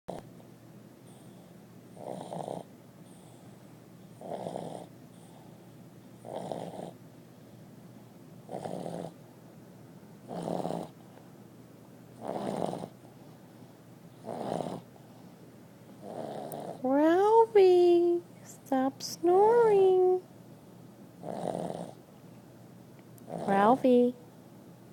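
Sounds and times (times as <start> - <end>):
dog snoring: 1.0 - 3.6, 4.2 - 5.6, 6.2 - 7.0, 8.4 - 9.2, 10.2 - 11.0, 12.2 - 13.0, 14.2 - 14.9, 16.0 - 17.0, 21.2 - 22.0, 23.2 - 23.8.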